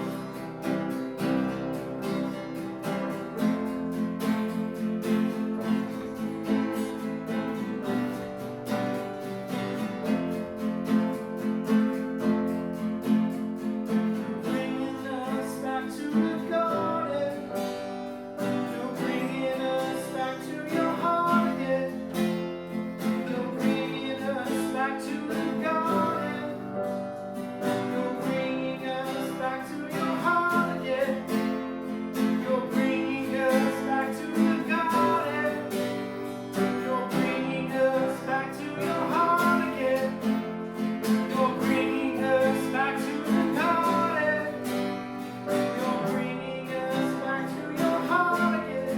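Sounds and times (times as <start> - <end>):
strummed acoustic guitar: 0.0 - 48.9
person singing: 14.2 - 48.9.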